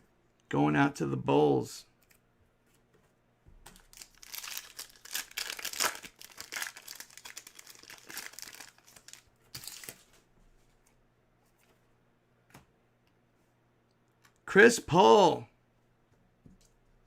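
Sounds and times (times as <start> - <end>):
plastic wrapper crinkling and tearing: 3.7 - 10.1.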